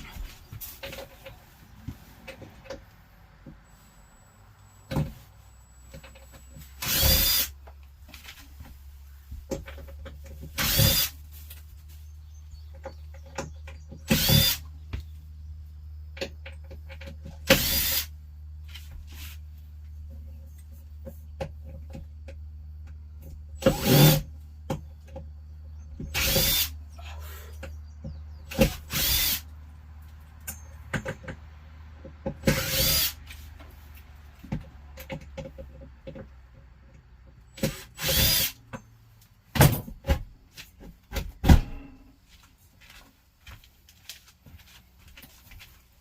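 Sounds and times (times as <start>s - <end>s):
power drill whine: 4.7s - 7.6s, 10.6s - 11.1s, 14.1s - 14.6s, 17.5s - 18.1s, 26.1s - 26.7s, 28.7s - 29.4s, 32.5s - 33.2s, 37.6s - 38.6s.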